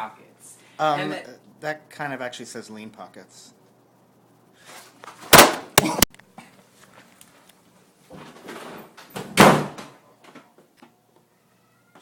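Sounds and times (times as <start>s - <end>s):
loud bangs and slams: 9.2s - 9.8s.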